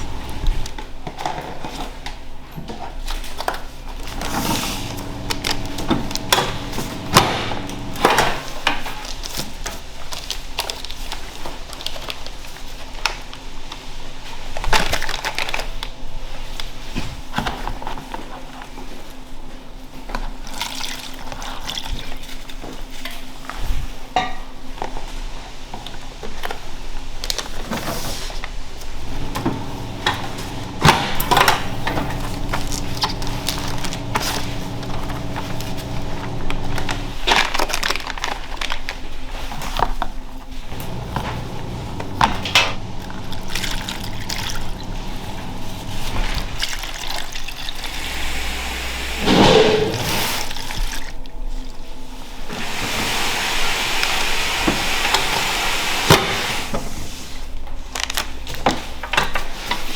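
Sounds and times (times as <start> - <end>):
steady hum: 0.0 - 0.7, 4.1 - 8.4, 29.0 - 37.3, 40.7 - 46.6, 48.0 - 50.4
liquid sloshing and pouring: 41.1 - 47.9.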